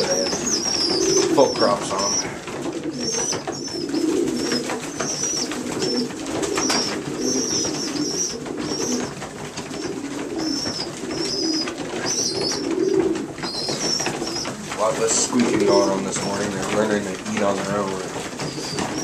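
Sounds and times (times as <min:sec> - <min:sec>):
young pigeons squeaking: 0:00.0 - 0:19.0
low cooing: 0:02.1 - 0:09.1, 0:09.9 - 0:13.3.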